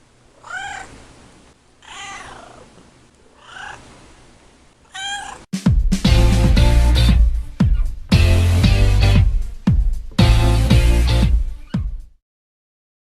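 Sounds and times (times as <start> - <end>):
cat meowing: 0.4 - 1.0, 1.8 - 2.7, 3.4 - 3.8, 4.9 - 5.5, 7.4 - 8.0
music with heavy beat: 5.5 - 12.2.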